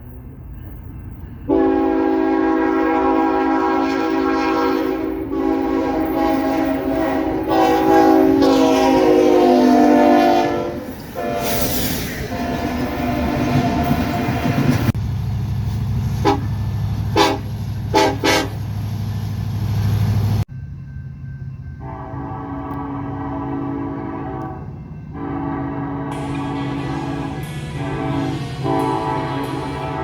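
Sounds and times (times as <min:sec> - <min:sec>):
locomotive rumble: 0:00.0 - 0:30.0
train chord horn blasts: 0:01.5 - 0:15.0, 0:16.2 - 0:18.7, 0:21.8 - 0:30.0
short sharp horn blasts: 0:17.2 - 0:18.6, 0:25.2 - 0:30.0.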